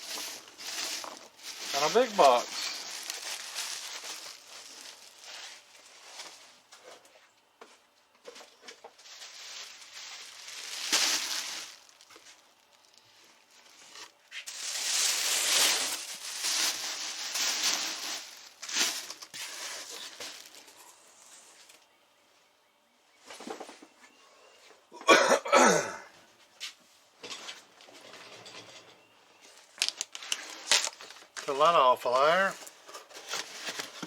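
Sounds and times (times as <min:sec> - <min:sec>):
cardboard rustling and tearing: 0:00.0 - 0:06.5, 0:08.9 - 0:12.4, 0:13.6 - 0:20.7, 0:29.8 - 0:31.3, 0:33.1 - 0:34.0.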